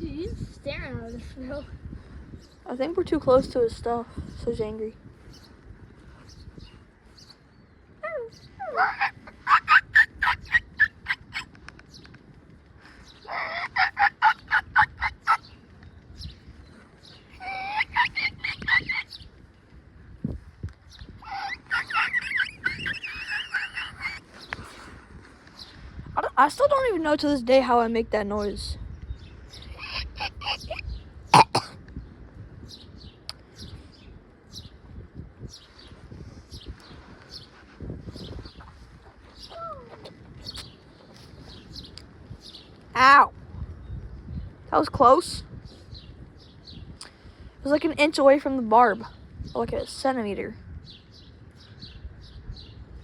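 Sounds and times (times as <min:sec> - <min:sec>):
high bird chirps: 0:06.3 - 0:12.1, 0:13.0 - 0:19.4, 0:20.9 - 0:24.6
turkey gobbling call: 0:08.6 - 0:11.5, 0:13.3 - 0:15.4, 0:17.3 - 0:19.1, 0:21.2 - 0:24.2
person coughing: 0:31.4 - 0:31.8.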